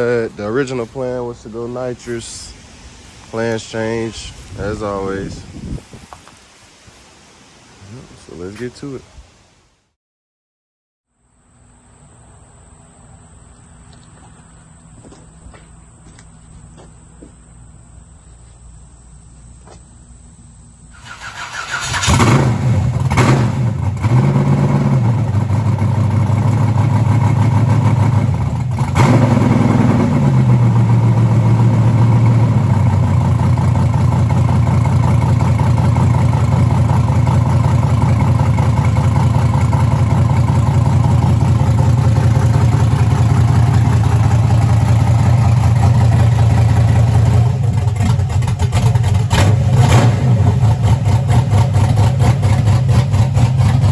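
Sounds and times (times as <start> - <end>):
car engine starting revving and idling: 21.0 - 53.9.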